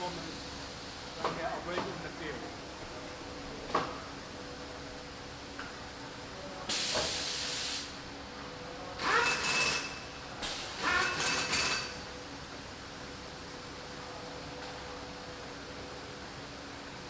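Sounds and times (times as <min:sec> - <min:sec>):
compressed air hisses: 0:06.7 - 0:08.0.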